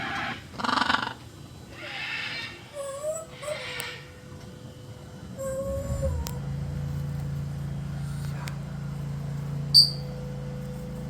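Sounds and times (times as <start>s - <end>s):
steady low hum: 2.6s - 11.0s.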